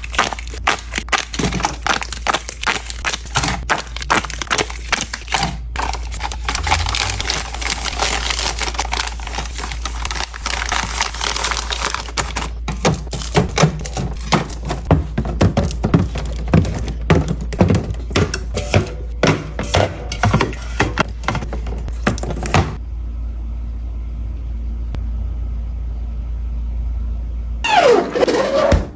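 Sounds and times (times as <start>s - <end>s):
snack packaging crinkling: 0.0s - 22.6s
items tapped and set down: 0.2s - 7.1s, 8.0s - 22.8s.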